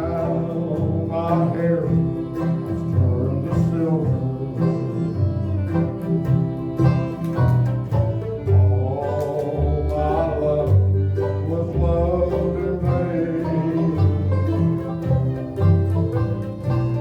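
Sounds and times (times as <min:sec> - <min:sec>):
bluegrass string band playing: 0:00.0 - 0:17.0.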